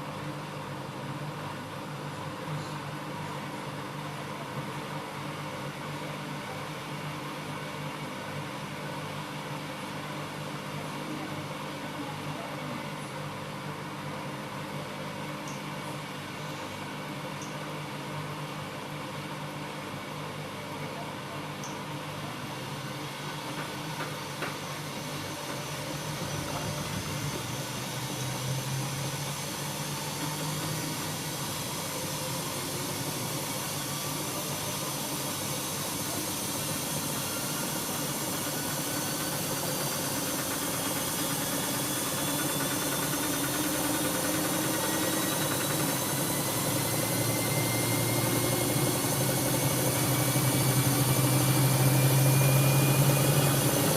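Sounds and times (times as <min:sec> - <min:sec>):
washing machine hum and whir: 0:00.0 - 0:53.9
motor whine rising in pitch: 0:24.3 - 0:53.9.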